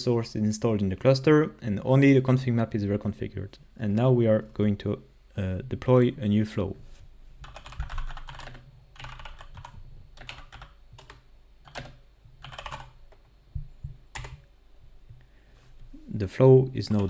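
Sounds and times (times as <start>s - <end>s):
typing on computer keyboard: 7.4s - 13.2s, 14.1s - 14.5s.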